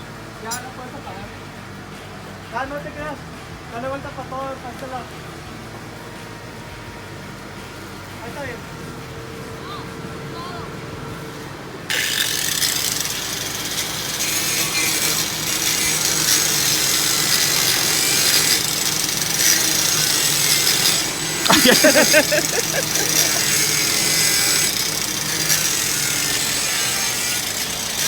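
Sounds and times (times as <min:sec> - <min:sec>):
power tool cutting steel: 0:11.9 - 0:28.0.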